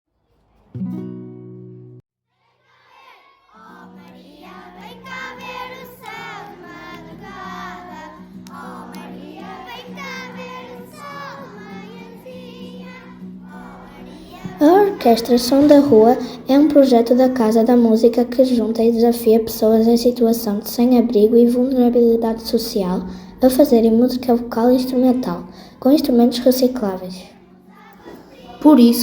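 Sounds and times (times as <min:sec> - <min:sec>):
children singing: 0:02.7 - 0:29.0
held accompaniment tone: 0:13.6 - 0:27.3.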